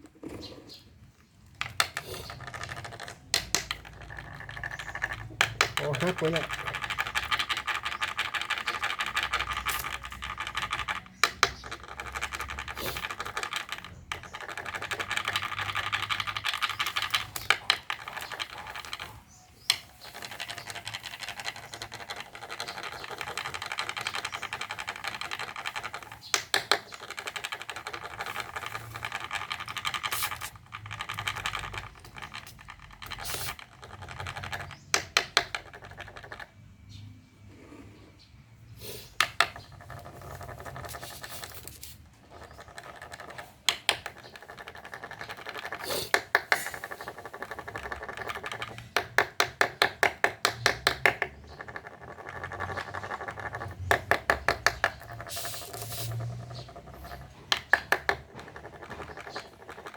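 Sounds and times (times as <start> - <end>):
rapid scratching rasp: 2.1 - 19.4, 20.0 - 34.9, 51.3 - 59.9.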